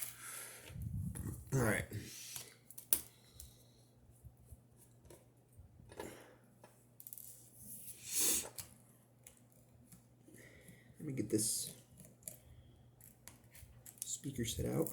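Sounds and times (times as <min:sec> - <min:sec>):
low steady hum: 0:00.0 - 0:08.0.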